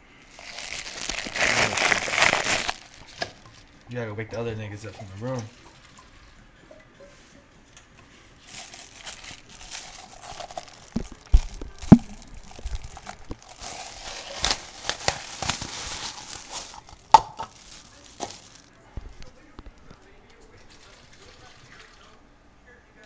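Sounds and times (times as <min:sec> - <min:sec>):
rustling and handling noise: 0:00.0 - 0:06.4, 0:07.0 - 0:21.8.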